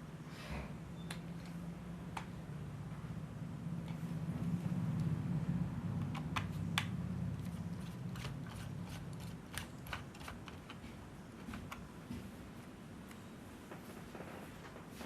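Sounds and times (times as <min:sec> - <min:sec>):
low hum: 0:00.6 - 0:09.3.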